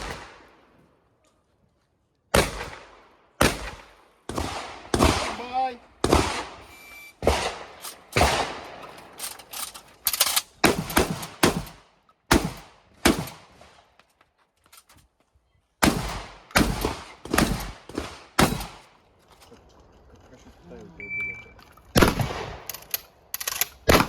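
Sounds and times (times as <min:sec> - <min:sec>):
shotgun shots echoing: 0:00.0 - 0:00.6, 0:02.3 - 0:09.2, 0:10.6 - 0:13.8, 0:15.8 - 0:18.9, 0:21.9 - 0:22.7.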